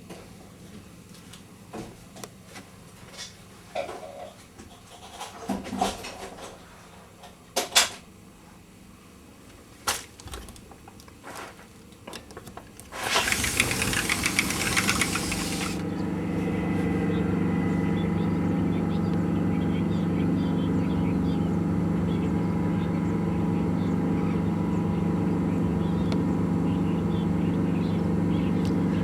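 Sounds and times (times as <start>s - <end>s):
boat engine humming: 12.9s - 29.0s
loud rushing hiss: 13.0s - 15.8s.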